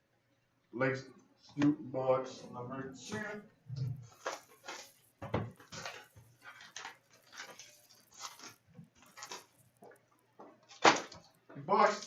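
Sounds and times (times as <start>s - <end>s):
cardboard and wrapper handling: 4.0s - 11.3s.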